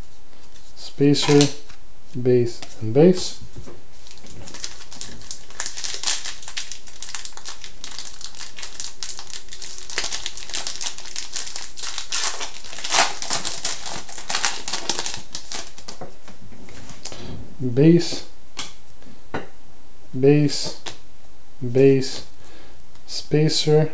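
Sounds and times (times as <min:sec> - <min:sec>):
cards shuffling: 0:00.4 - 0:01.7
wrapper crinkling: 0:03.9 - 0:16.0.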